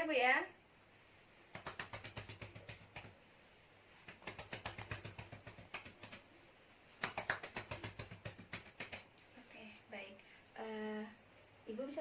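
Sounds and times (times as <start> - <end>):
hands patting on back: 1.5 - 3.2, 4.0 - 6.3, 7.0 - 9.2.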